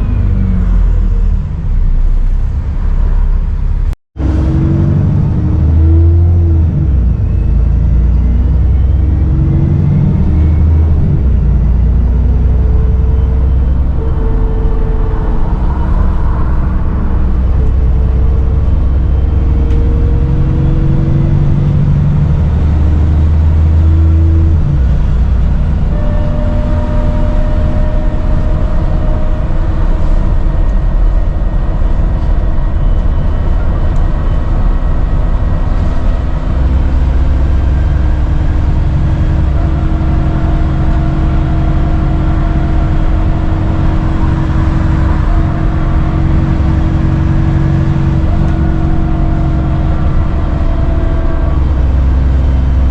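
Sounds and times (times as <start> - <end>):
bus diesel engine running: 0.0 - 52.9
turbo whistle: 25.8 - 30.4.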